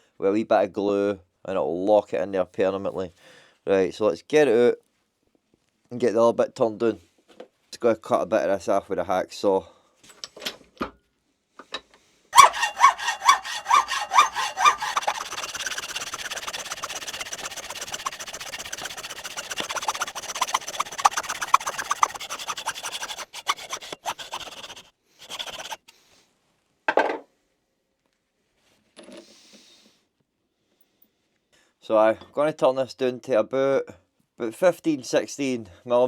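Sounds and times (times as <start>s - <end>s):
brief scrape: 12.4s - 26.0s
hacksaw cutting: 12.4s - 26.0s.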